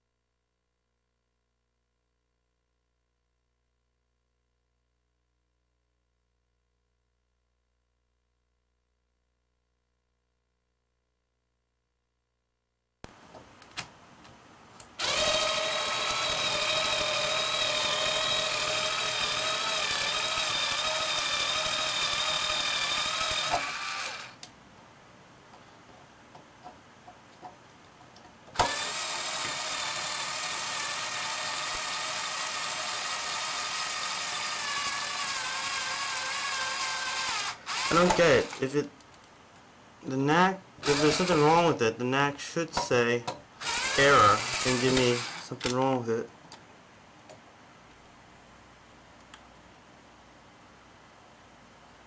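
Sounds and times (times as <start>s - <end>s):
power drill motor whine: 15.0s - 24.4s, 28.6s - 38.6s, 40.8s - 41.5s, 43.6s - 45.4s.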